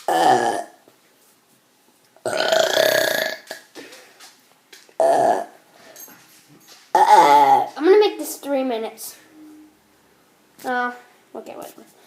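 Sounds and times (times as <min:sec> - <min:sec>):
person burping: 0:00.0 - 0:00.8, 0:02.2 - 0:03.7, 0:05.0 - 0:05.6, 0:07.0 - 0:07.8.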